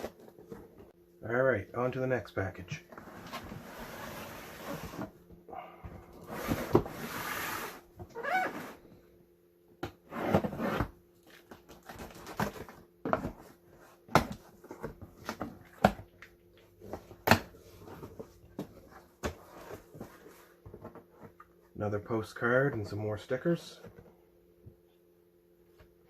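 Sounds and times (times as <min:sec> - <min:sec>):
cardboard box rustling and scraping: 0:03.0 - 0:05.2.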